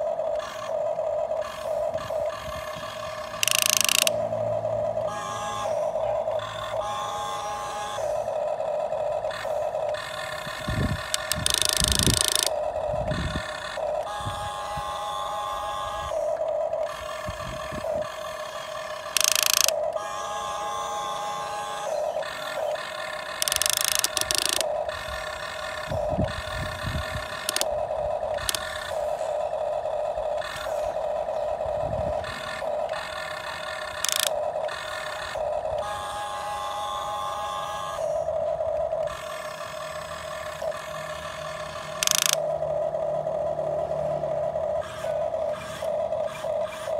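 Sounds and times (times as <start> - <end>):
small electric motors whining: 0.0 - 46.9.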